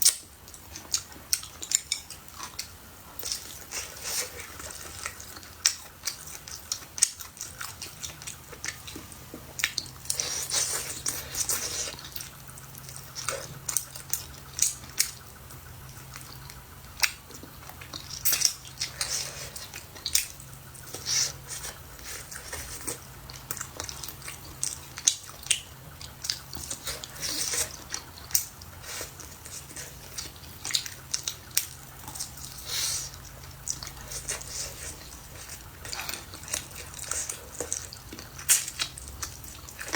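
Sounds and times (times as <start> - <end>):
person chewing and biting food: 0.0 - 39.9.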